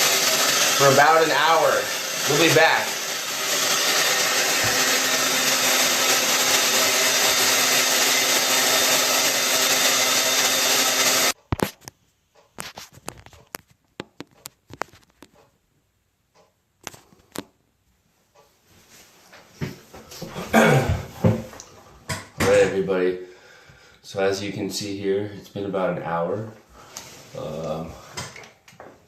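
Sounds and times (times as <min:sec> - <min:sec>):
hair dryer blowing: 0:00.0 - 0:11.4.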